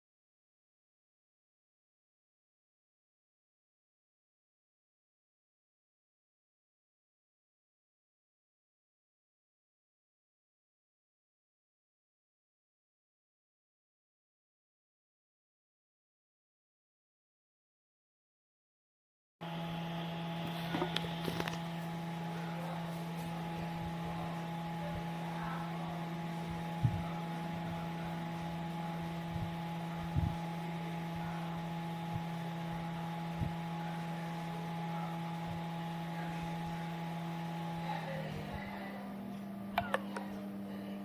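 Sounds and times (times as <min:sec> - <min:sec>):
ceiling fan motor humming: 0:19.4 - 0:41.0.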